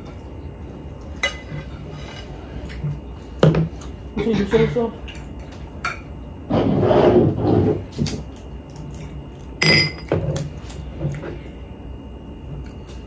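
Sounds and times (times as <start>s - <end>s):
dish clinking: 9.6s - 10.1s.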